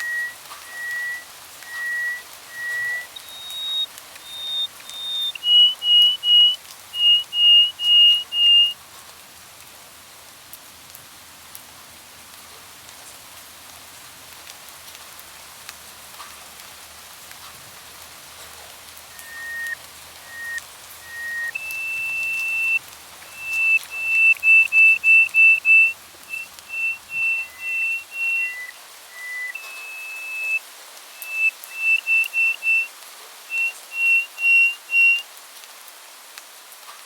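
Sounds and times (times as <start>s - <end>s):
bird whistling short notes: 0.0s - 8.8s, 19.1s - 30.6s, 31.2s - 32.9s, 33.5s - 35.2s
faint ticks: 0.0s - 9.1s
soft rain-like hiss: 0.0s - 37.0s.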